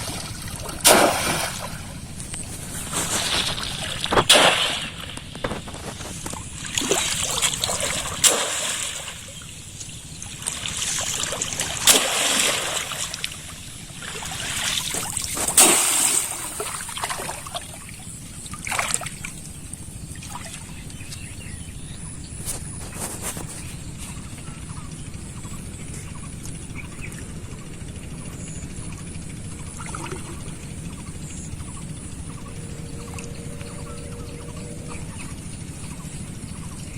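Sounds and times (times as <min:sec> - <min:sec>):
pond water splashing: 0:00.0 - 0:20.8, 0:29.5 - 0:35.4.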